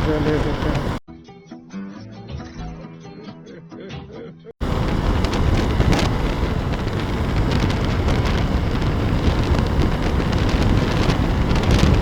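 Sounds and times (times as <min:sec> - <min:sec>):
motorcycle engine running: 0:00.0 - 0:01.0, 0:04.6 - 0:12.0
road noise: 0:00.0 - 0:01.0, 0:04.6 - 0:12.0
wind buffeting microphone: 0:00.0 - 0:01.0, 0:04.6 - 0:12.0.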